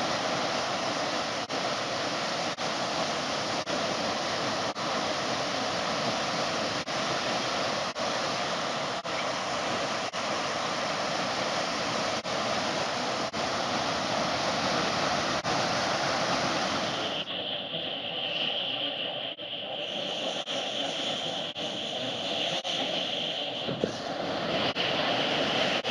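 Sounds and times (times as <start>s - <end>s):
waterfall rushing: 0.0s - 17.4s.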